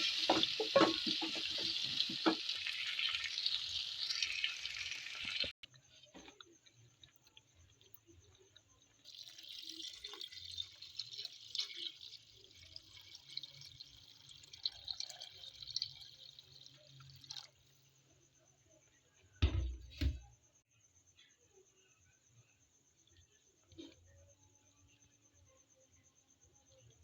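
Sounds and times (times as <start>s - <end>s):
water pouring and splashing: 0.0s - 5.7s, 9.0s - 17.8s
dull thumps: 19.4s - 20.3s.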